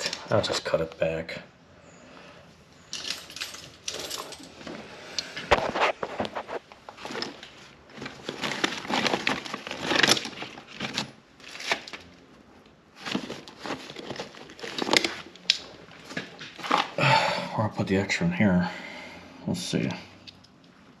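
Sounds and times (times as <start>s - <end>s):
wire crinkling and rustling: 2.8s - 17.0s.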